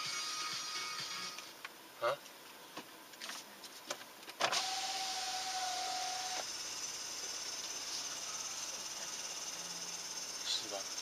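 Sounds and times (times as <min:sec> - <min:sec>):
compressor hissing: 0:04.5 - 0:11.0
thin steady tone: 0:06.5 - 0:11.0.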